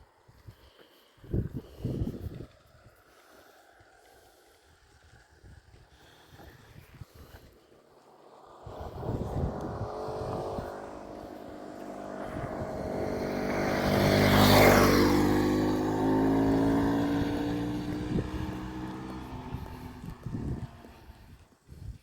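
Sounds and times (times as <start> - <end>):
vehicle driving past: 7.8 - 21.5.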